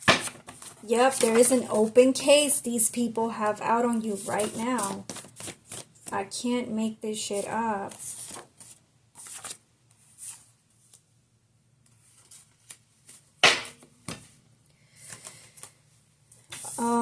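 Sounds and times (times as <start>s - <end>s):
cards rustling and shuffling: 0.0s - 2.0s, 3.9s - 6.2s, 7.3s - 11.0s, 11.9s - 13.3s.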